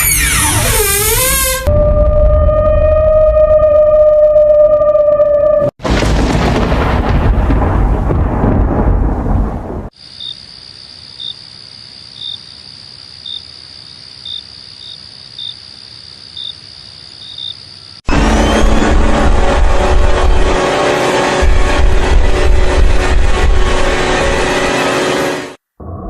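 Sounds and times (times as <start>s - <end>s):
loud thunderclap rumbling: 5.8s - 9.9s, 18.1s - 24.7s
cricket chirp: 10.0s - 18.0s.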